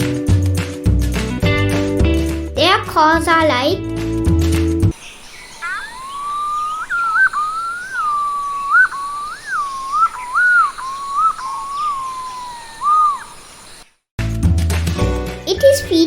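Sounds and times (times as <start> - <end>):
pigeon whistled song: 4.9 - 13.8
short rising bird notes: 4.9 - 13.9.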